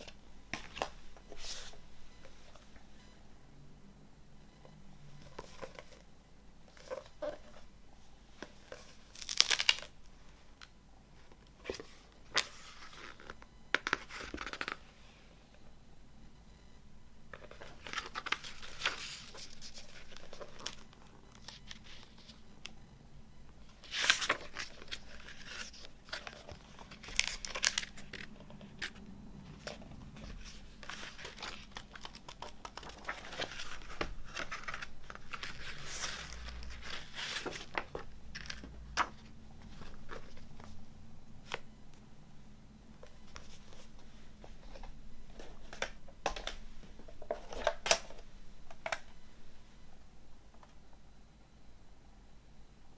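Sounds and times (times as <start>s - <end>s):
packaging tearing and crinkling: 9.1s - 9.9s, 23.9s - 28.9s.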